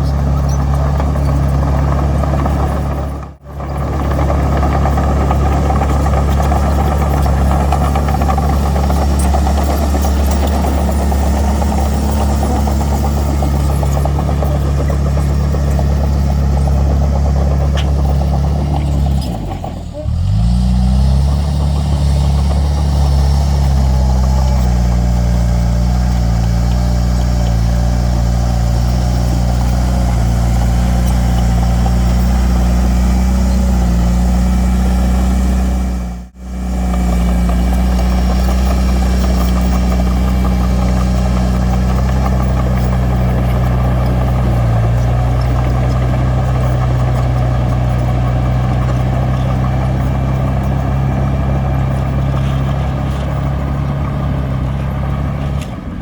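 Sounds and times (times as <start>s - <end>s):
diesel engine droning: 0.0s - 56.0s.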